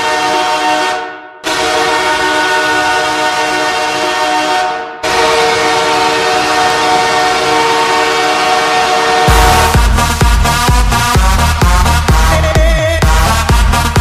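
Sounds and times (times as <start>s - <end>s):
goal horn blasts: 0.0s - 12.4s
electronic dance beat: 9.2s - 14.0s.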